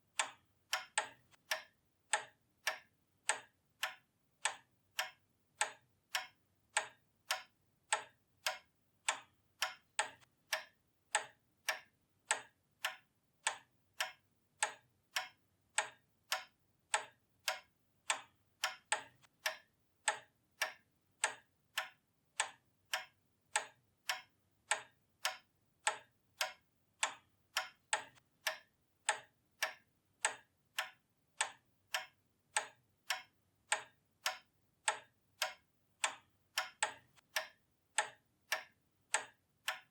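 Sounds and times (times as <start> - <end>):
pendulum clock ticking: 0.0 - 39.9.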